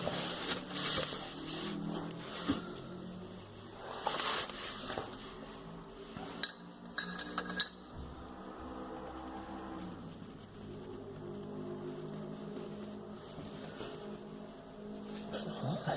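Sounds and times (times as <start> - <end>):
metal tools clinking and scraping: 6.3 - 7.9.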